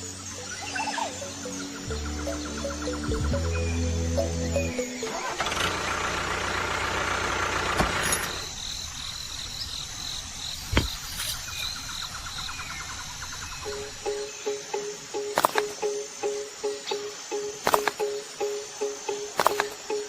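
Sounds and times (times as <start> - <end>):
small motor humming: 5.3 - 8.6
sharp clicks: 15.2 - 15.9, 17.6 - 18.4, 19.2 - 20.0.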